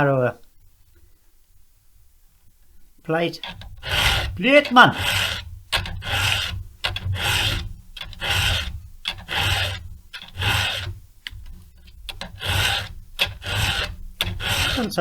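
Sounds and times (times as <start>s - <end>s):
hand file rasping on chain: 3.4s - 15.0s.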